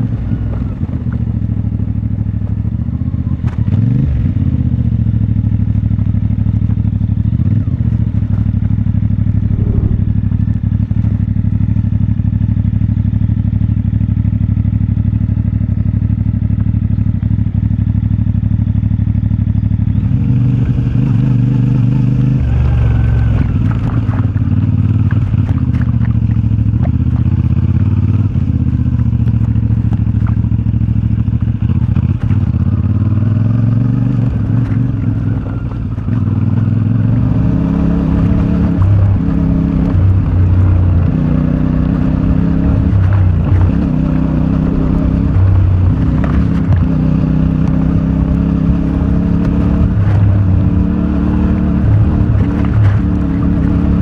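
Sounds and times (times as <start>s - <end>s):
motorcycle engine running: 0.0s - 54.0s.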